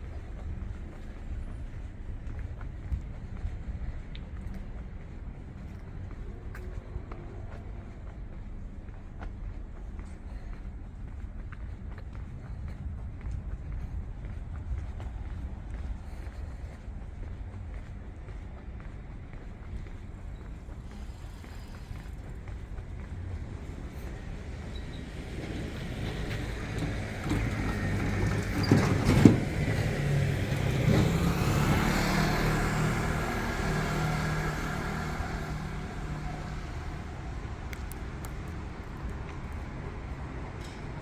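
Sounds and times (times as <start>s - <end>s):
vehicle passing: 19.5s - 41.0s.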